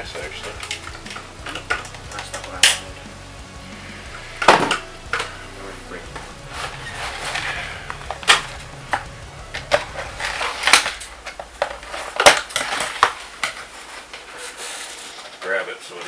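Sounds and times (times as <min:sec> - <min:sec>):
packaging rustling: 0:06.1 - 0:15.6.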